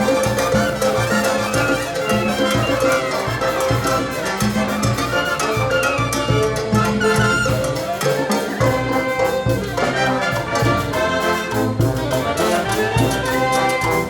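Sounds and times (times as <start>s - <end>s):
brass band playing cumbia: 0.0s - 14.0s
steady percussion beat: 0.0s - 14.0s
trumpets and trombones melody: 0.0s - 14.0s.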